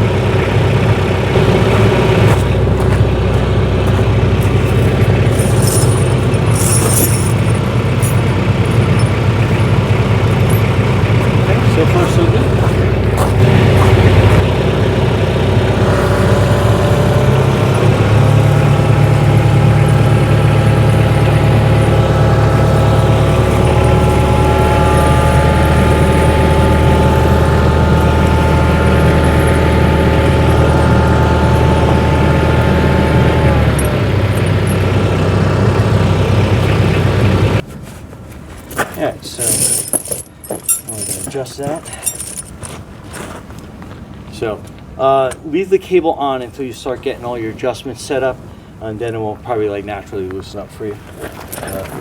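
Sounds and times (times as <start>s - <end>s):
tractor engine running: 0.0s - 37.7s.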